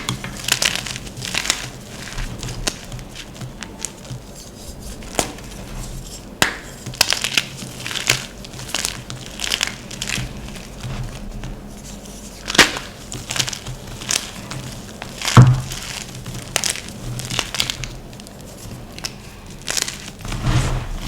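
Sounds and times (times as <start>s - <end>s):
chalk crushed by hand crunching: 12.4s - 21.0s.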